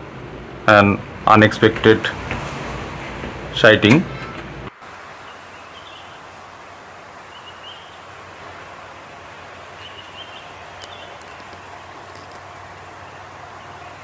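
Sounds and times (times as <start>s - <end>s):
wetland outdoor ambience: 0.0s - 14.0s
faint bird chirps: 5.2s - 6.2s, 7.3s - 8.1s, 9.8s - 11.6s.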